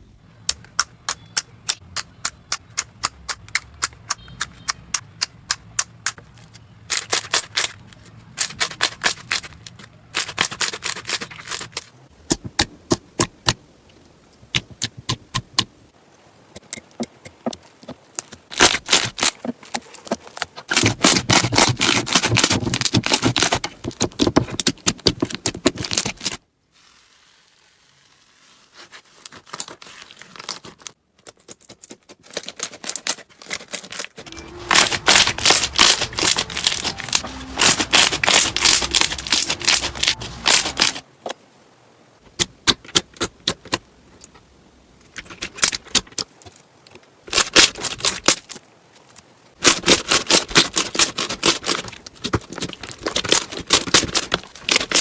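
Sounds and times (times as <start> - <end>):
slime squishing with crackling clicks: 0.4 - 7.7.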